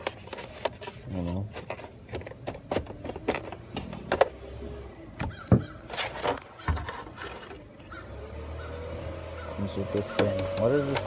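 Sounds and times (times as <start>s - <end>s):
objects being handled: 0.0s - 7.9s.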